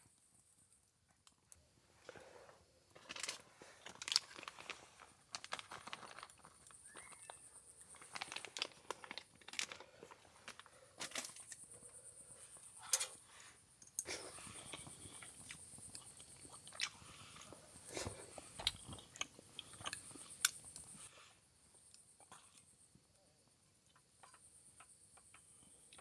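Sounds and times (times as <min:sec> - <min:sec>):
gear rustling and crinkling: 0:03.0 - 0:11.6.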